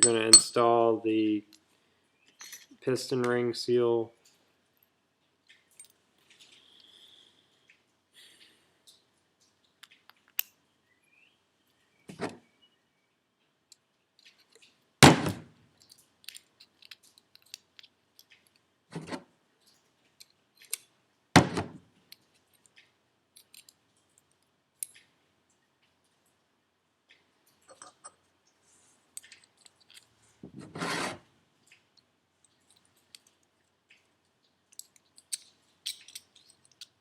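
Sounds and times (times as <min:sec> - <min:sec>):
light clicks and taps of metal parts: 0:04.2 - 0:10.6, 0:13.4 - 0:14.8, 0:15.7 - 0:21.0, 0:22.0 - 0:26.4, 0:27.0 - 0:30.4, 0:31.6 - 0:37.0.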